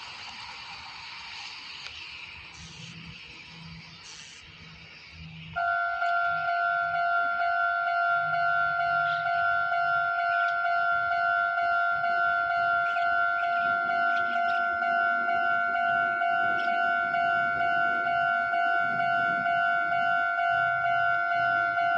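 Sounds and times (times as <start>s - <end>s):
level crossing warning bell: 5.6s - 21.9s.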